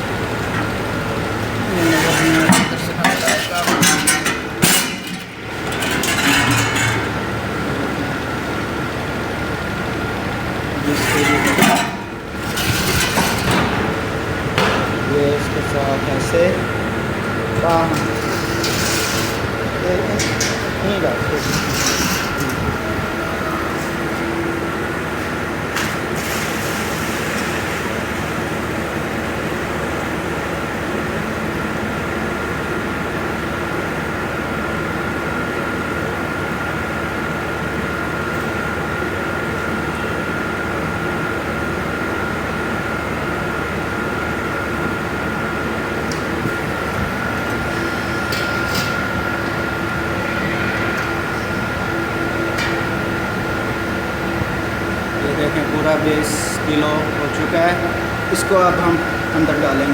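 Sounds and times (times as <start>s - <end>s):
machinery droning: 0.0s - 59.9s
high whine: 46.0s - 59.9s.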